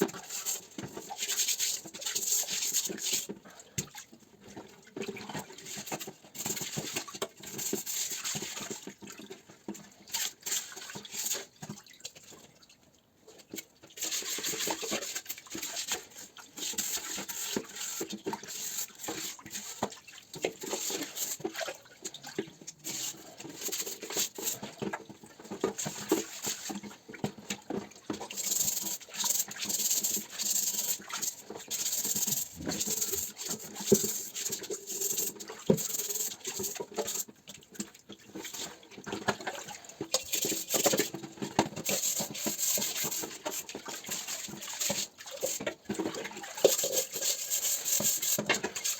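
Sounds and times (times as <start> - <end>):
brush scrubbing metal helmet: 20.6 - 21.7, 22.9 - 24.8, 28.2 - 37.3, 39.5 - 48.9.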